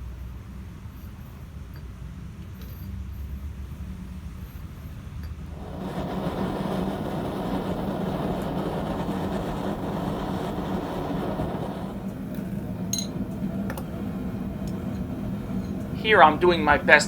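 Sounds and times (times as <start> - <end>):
constant low hum: 0.0 - 17.0
steady rushing noise: 5.5 - 17.0
high metallic ring: 12.9 - 13.2.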